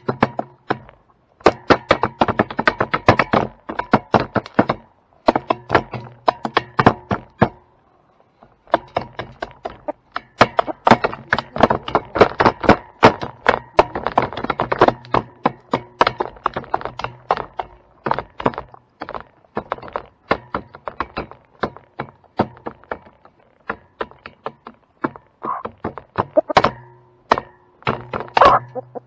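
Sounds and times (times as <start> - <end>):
chickens pecking on hard surface: 0.0 - 29.0.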